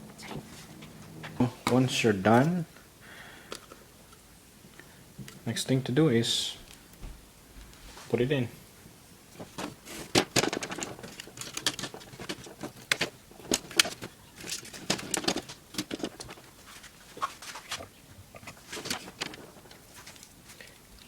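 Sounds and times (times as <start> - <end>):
plastic and metal parts clicking: 9.6 - 16.4.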